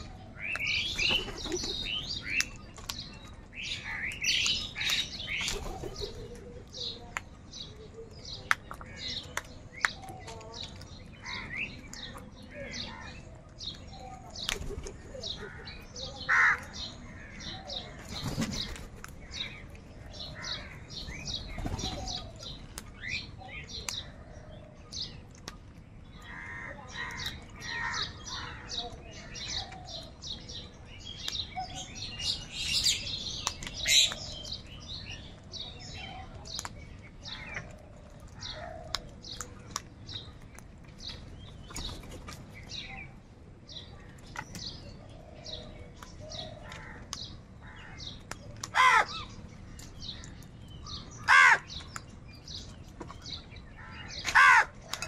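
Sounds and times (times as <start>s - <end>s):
crows cawing: 16.3s - 16.7s, 48.7s - 49.3s, 51.2s - 51.8s, 53.8s - 54.8s.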